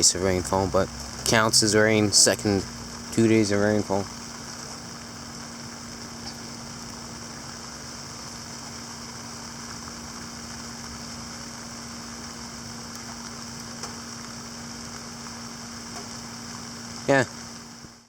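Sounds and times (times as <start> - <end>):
low mechanical hum: 0.0 - 18.0
steady rain hiss: 0.0 - 18.0.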